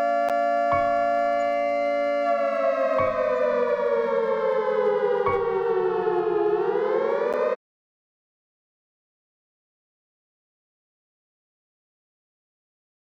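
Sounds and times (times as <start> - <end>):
civil defense siren: 0.0 - 7.6.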